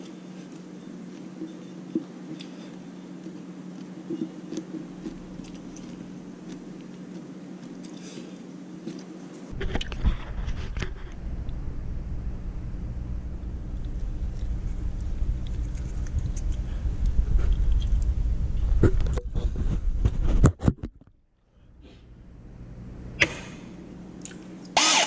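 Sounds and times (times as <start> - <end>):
steady hum: 0.0 - 25.0
drill hole saw scraping stone: 24.8 - 25.0.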